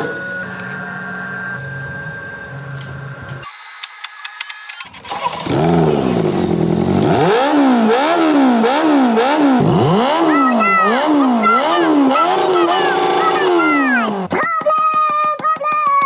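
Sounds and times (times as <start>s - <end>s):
car engine cranking: 4.6s - 15.8s
car engine revving: 5.2s - 14.4s.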